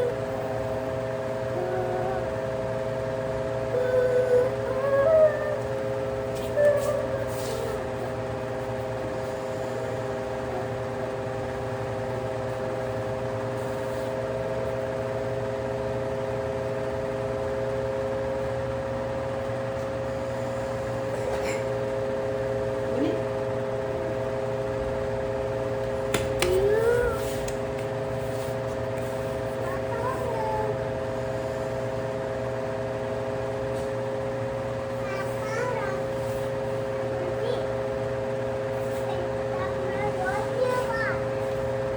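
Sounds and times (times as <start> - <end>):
child's voice: 0.0 - 0.7, 1.5 - 2.5, 3.7 - 5.8, 6.4 - 7.8, 26.4 - 27.5, 29.5 - 30.9, 34.9 - 37.8, 38.8 - 41.4
electric fan motor hum: 0.0 - 41.9.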